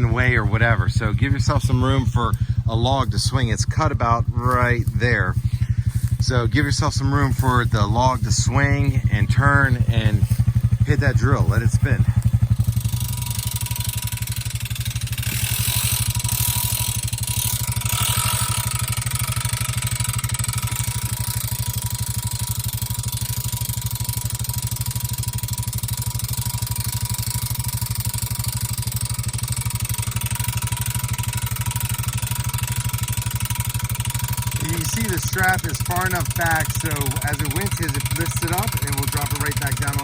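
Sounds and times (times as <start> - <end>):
atv engine idling: 0.0 - 40.0
drill spinning winch whine: 10.9 - 40.0.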